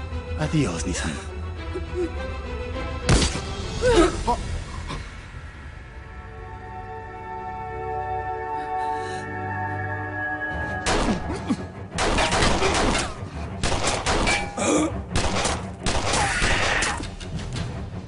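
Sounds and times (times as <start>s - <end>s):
gunshots and impacts: 12.0s - 16.9s.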